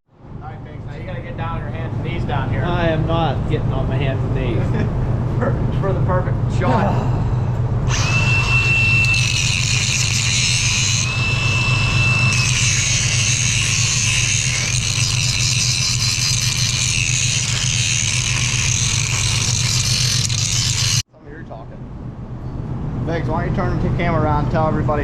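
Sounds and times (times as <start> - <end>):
welder humming: 6.6 - 21.1
thin whistle: 8.0 - 9.4, 10.7 - 13.6
welding arc crackling and hissing: 9.0 - 21.0.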